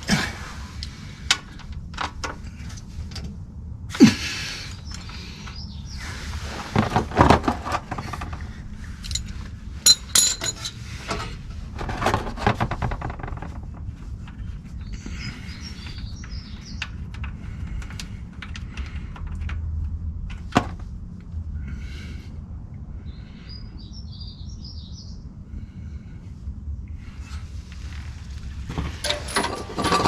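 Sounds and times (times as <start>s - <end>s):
metal tools clinking: 9.0s - 11.2s, 29.0s - 30.0s.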